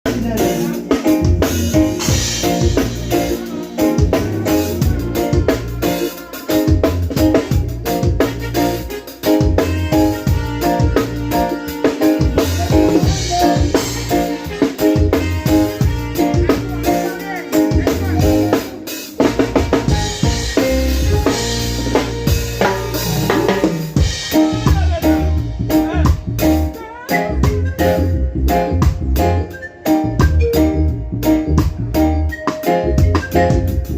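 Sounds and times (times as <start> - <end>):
bass line: 0.0 - 33.9
reggae instrumental: 0.0 - 33.9
bass drum and snare strikes: 19.2 - 26.7, 28.6 - 29.4.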